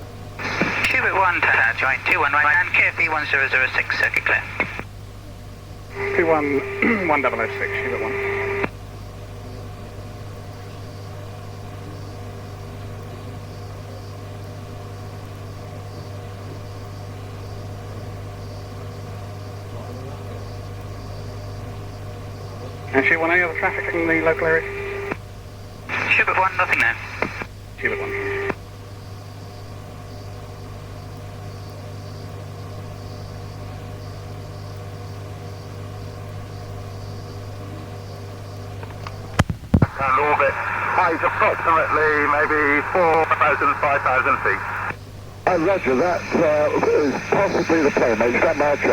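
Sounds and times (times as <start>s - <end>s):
faint steady tones: 0.0s - 48.9s
radio receiver hum and hiss: 0.0s - 48.9s
faint high pulsing warble: 5.9s - 8.7s.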